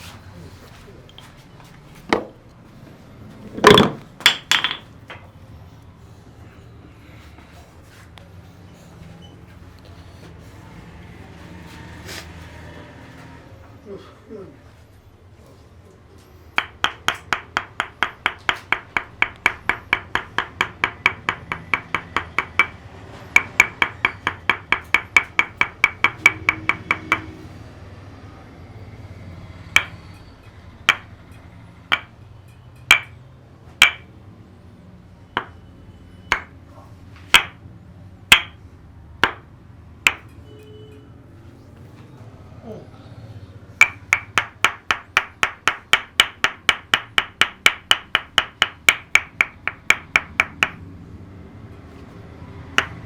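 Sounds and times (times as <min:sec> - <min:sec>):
wooden mallet tapping wooden wedge: 0:03.6 - 0:05.3, 0:16.6 - 0:22.8, 0:23.4 - 0:27.4, 0:29.7 - 0:30.1, 0:30.8 - 0:32.2, 0:32.8 - 0:33.2, 0:33.8 - 0:34.1, 0:35.4 - 0:35.6, 0:36.3 - 0:36.6, 0:37.3 - 0:37.6, 0:38.3 - 0:38.6, 0:39.2 - 0:40.3, 0:43.8 - 0:50.8, 0:52.8 - 0:53.0.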